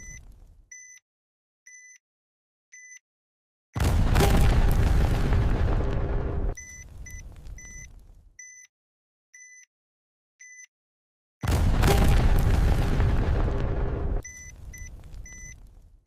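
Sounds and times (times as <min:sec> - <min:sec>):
short electronic beeps: 0:00.0 - 0:01.0, 0:01.7 - 0:02.0, 0:02.8 - 0:03.0, 0:06.6 - 0:08.7, 0:09.4 - 0:09.7, 0:10.4 - 0:10.7, 0:14.2 - 0:15.6
bomb explosion: 0:03.8 - 0:08.3, 0:11.4 - 0:16.0.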